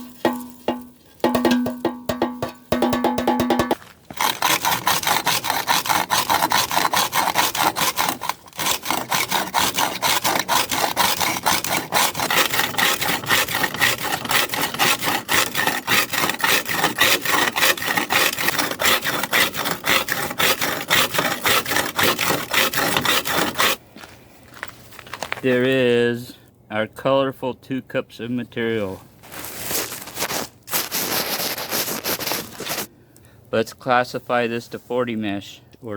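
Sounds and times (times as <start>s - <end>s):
rock crusher grinding: 4.1s - 23.8s.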